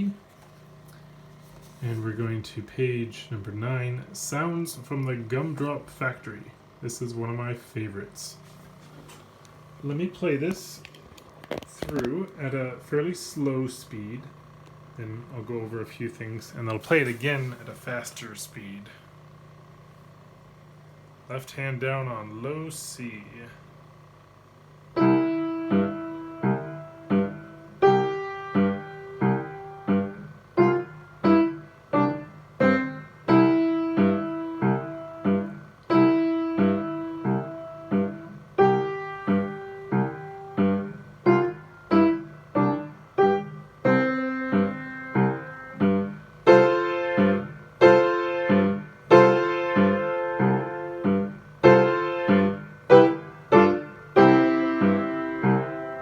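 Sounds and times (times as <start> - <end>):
piano playing: 24.9 - 56.0.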